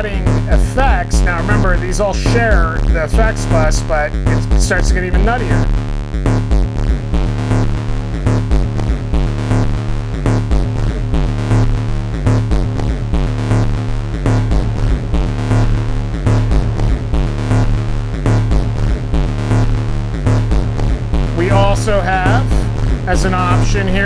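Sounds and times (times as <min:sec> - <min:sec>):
low synthesizer drone: 0:00.0 - 0:24.0.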